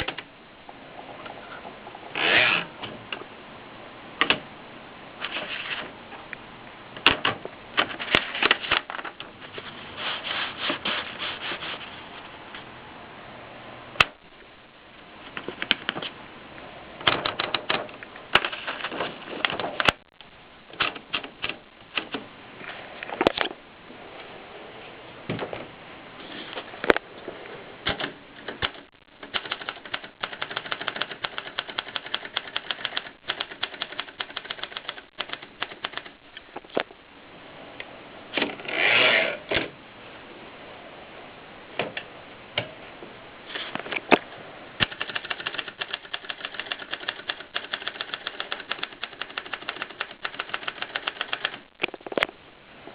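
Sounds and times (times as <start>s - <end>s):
typewriter keys striking: 17.0s - 20.0s, 27.9s - 36.2s, 44.8s - 51.6s.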